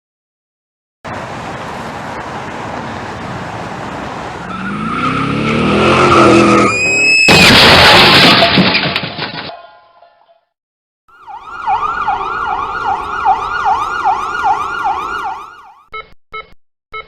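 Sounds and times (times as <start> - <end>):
car engine revving: 4.4 - 6.7
car crash: 5.5 - 9.6
debris clattering: 7.3 - 9.7.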